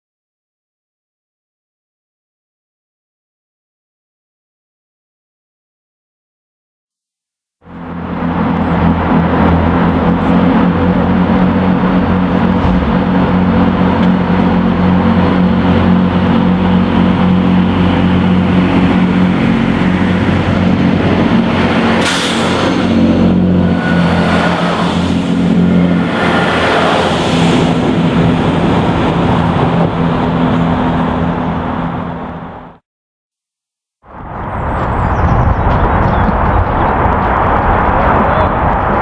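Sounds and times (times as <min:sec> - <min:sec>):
locomotive engine droning: 0:07.6 - 0:32.8
brief high hiss: 0:22.0 - 0:22.9.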